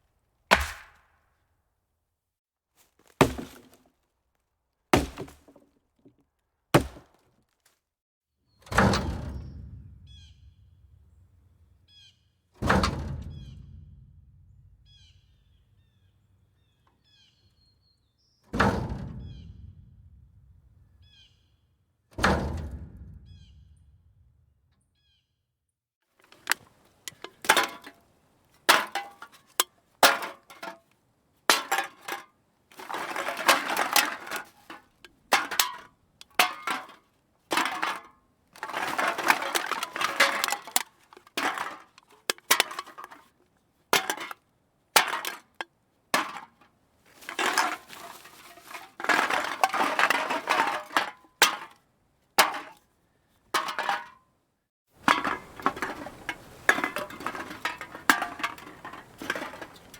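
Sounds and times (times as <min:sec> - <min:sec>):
metal cans clinking together: 0:26.2 - 0:28.0, 0:28.7 - 0:30.9, 0:31.5 - 0:43.3, 0:44.0 - 0:44.4, 0:45.0 - 0:45.6, 0:46.2 - 0:46.6, 0:47.2 - 0:51.8, 0:53.6 - 0:54.2, 0:55.0 - 0:59.9.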